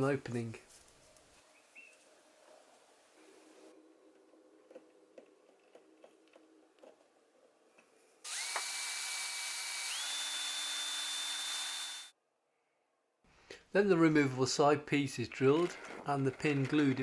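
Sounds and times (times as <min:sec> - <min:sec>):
small power drill whining: 0:08.2 - 0:12.2.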